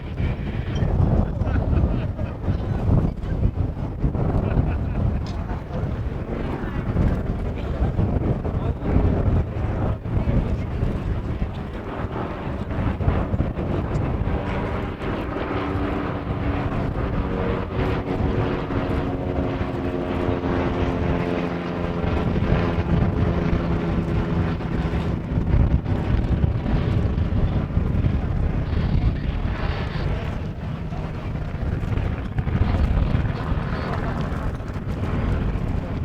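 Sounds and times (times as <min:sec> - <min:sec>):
piston plane engines droning: 0:00.0 - 0:36.0
wind and air rushing: 0:00.0 - 0:36.0.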